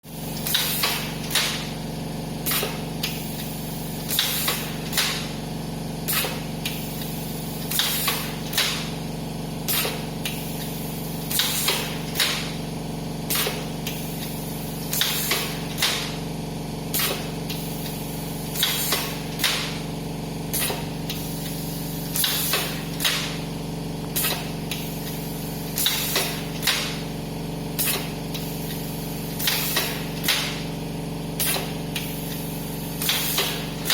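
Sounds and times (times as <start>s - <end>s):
air compressor humming: 0.0s - 33.9s
compressed air hisses: 31.4s - 33.9s.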